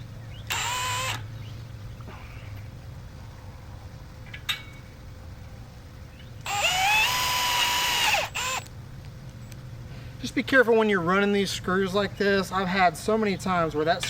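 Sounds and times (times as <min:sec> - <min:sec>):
power drill motor whining: 0:00.5 - 0:01.2, 0:06.4 - 0:08.7.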